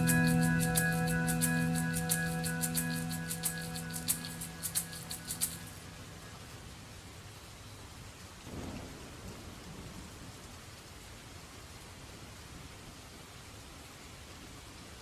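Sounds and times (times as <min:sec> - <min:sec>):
song playing: 0:00.0 - 0:05.8
steady rain falling: 0:00.0 - 0:15.0
low rumble of thunder: 0:08.4 - 0:10.5.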